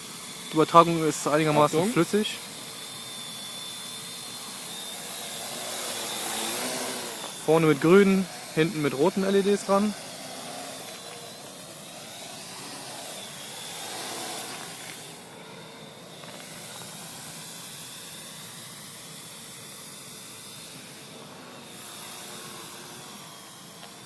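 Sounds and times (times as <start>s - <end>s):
drone rotors whirring: 0.0s - 24.0s.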